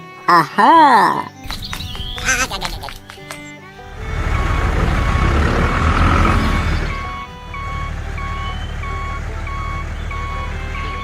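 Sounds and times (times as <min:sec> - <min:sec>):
low engine hum: 0:03.8 - 0:11.0
loud rumbling: 0:04.0 - 0:07.2
reversing beeper: 0:04.0 - 0:11.0.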